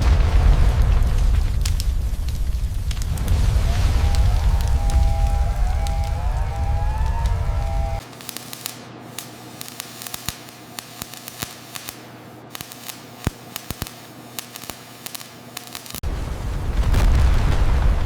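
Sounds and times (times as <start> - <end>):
loud low rumble: 0.0 - 8.0
welding arc crackling: 0.0 - 18.0
loud music: 3.7 - 8.0.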